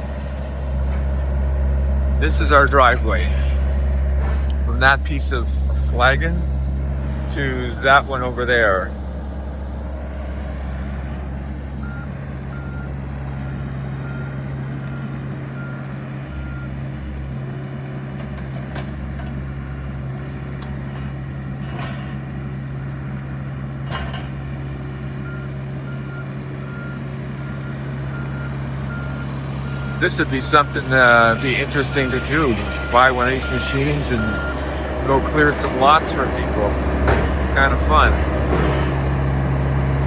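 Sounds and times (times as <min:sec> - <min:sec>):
excavator engine running: 0:00.0 - 0:40.0
rapid beeping alarm: 0:11.8 - 0:16.7, 0:25.2 - 0:36.7.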